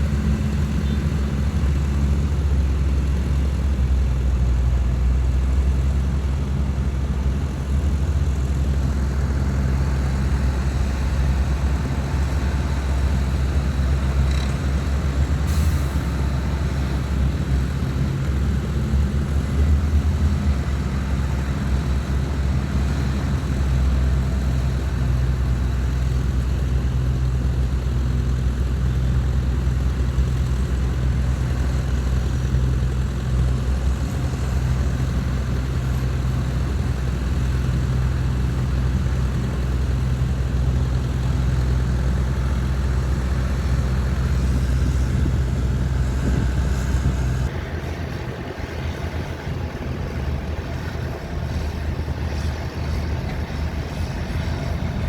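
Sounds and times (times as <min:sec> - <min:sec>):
heavy diesel engines droning: 0:00.0 - 0:55.0.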